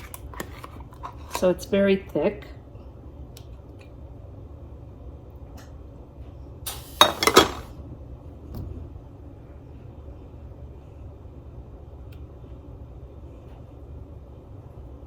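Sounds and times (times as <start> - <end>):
low steady hum: 0.0 - 15.0
spoon clinking against bowl: 7.0 - 7.6.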